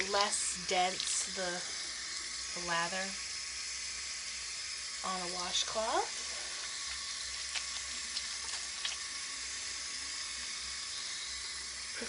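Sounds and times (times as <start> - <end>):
water running from a tap: 0.0 - 12.0.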